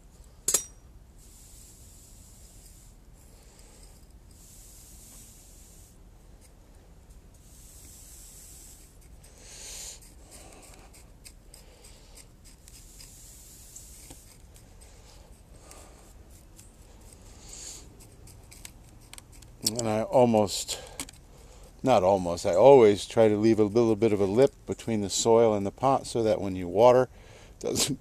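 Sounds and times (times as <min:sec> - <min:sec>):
soil trickling into a pot: 0:01.2 - 0:27.0
small scratches and clicks: 0:10.0 - 0:21.8.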